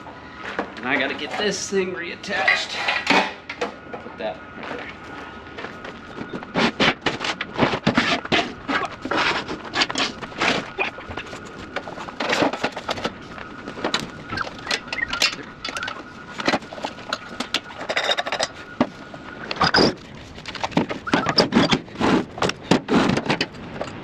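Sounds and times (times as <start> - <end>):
metal parts clanking and scraping: 0.4 - 3.8, 5.6 - 24.0.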